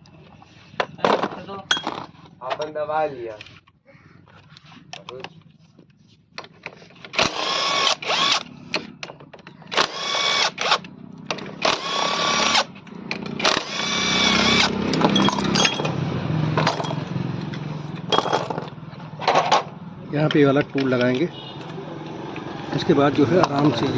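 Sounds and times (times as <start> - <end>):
power tool whining: 7.1 - 8.9, 9.6 - 16.0.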